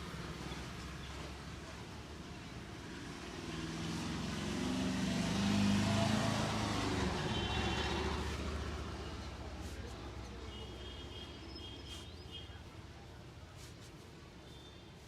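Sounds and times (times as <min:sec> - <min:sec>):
vehicle engine passing: 0:02.8 - 0:10.8.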